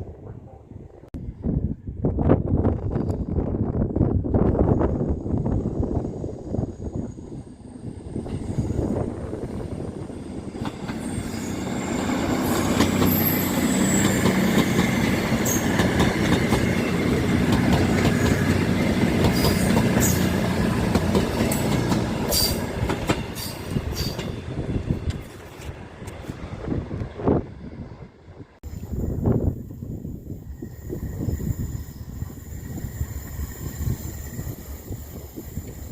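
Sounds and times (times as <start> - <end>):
train passing: 0.0 - 35.9
high wheel squeal: 10.3 - 15.9, 29.8 - 35.9.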